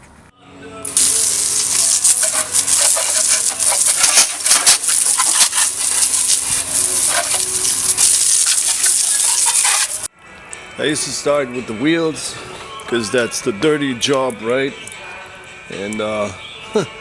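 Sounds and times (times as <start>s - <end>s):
hose water spraying: 0.9s - 10.1s.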